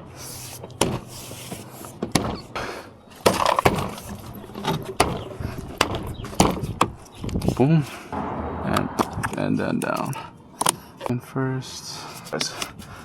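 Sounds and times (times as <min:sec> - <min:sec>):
plastic car trim clicks and knocks: 0:01.9 - 0:02.6, 0:03.2 - 0:07.6.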